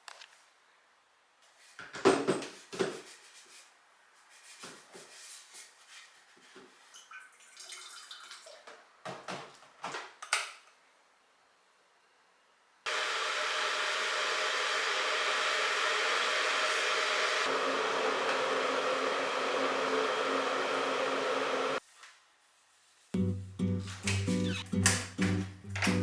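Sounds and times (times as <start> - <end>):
kitchen items knocking and clinking: 1.9 - 3.0, 23.8 - 26.0.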